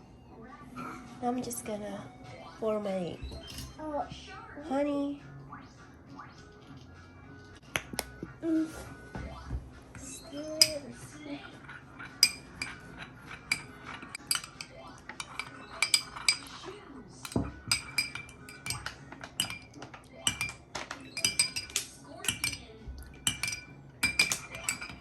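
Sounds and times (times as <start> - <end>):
metal spoon clinking in a glass: 10.3 - 10.9, 11.6 - 25.0.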